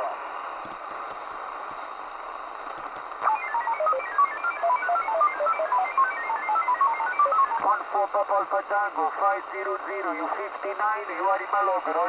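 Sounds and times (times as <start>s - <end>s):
radio static hiss: 0.0s - 5.8s, 7.4s - 12.0s
radio clicks: 0.6s - 1.9s, 2.6s - 3.4s, 7.5s - 8.6s
electronic beeps hopping in pitch: 3.2s - 7.6s.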